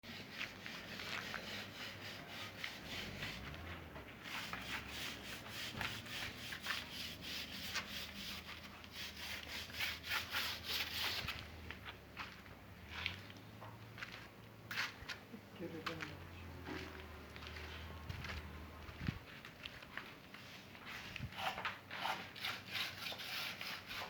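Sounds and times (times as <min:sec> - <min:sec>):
hand sanding strokes: 0:00.0 - 0:11.5, 0:20.3 - 0:24.0.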